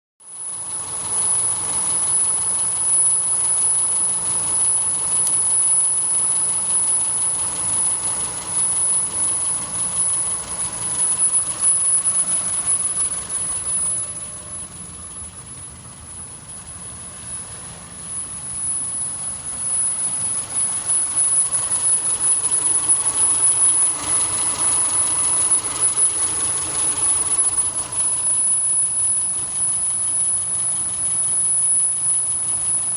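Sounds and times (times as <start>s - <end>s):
car engine running: 0.2s - 32.9s
unusual engine noise: 0.2s - 32.9s.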